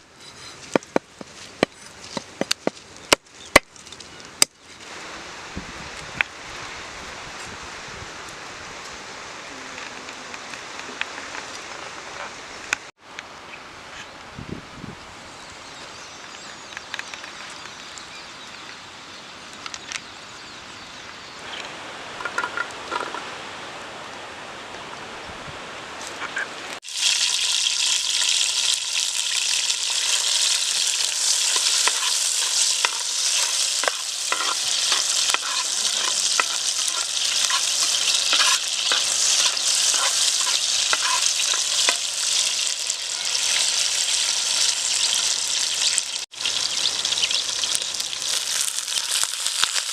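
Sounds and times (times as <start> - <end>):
food frying in hot oil: 26.8 - 49.9.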